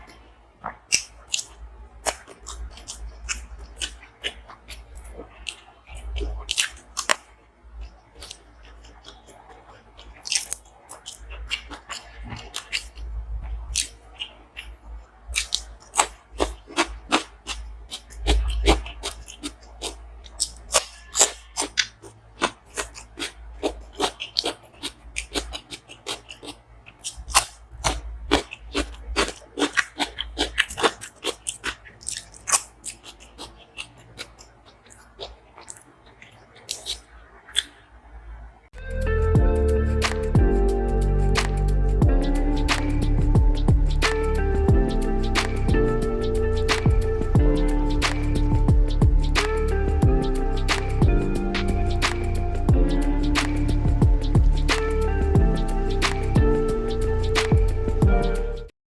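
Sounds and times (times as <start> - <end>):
crunchy chewing: 0.0 - 38.5, 39.4 - 58.7.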